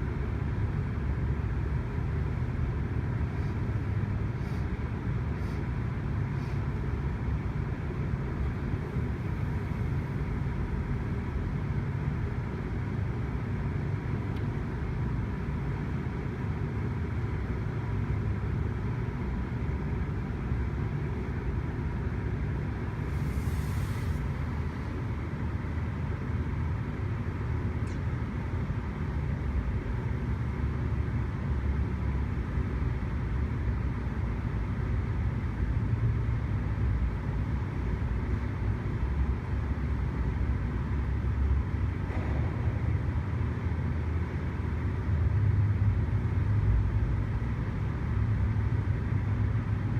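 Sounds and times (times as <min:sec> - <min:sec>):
short hiss burst: 0:23.1 - 0:24.4
diesel locomotive rumbling: 0:41.2 - 0:48.7.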